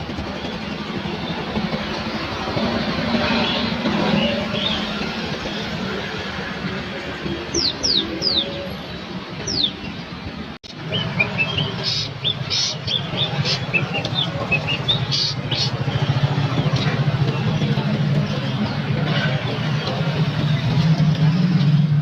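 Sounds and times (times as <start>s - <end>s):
songbirds whistling and chirping: 3.2s - 5.6s, 7.2s - 10.1s, 10.7s - 18.8s.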